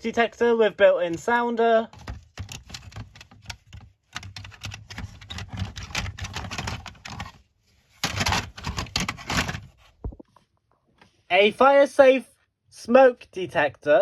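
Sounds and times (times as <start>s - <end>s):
plastic clicks and rattles: 1.9s - 7.4s, 8.0s - 9.7s.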